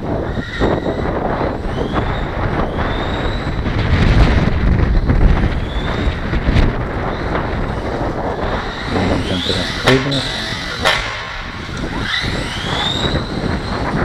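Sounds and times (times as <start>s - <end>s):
wind buffeting on microphone: 0.0s - 14.0s
electric motor whining: 7.1s - 14.0s.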